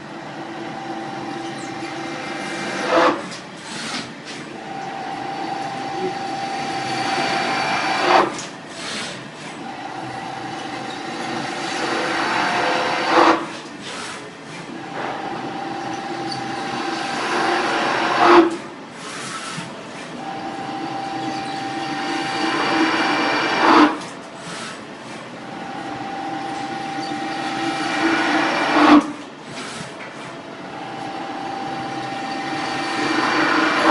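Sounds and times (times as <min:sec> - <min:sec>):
milling machine cutting metal: 0:04.8 - 0:08.5, 0:09.9 - 0:14.2, 0:14.9 - 0:18.6, 0:20.3 - 0:24.6, 0:25.6 - 0:29.8, 0:30.8 - 0:33.9.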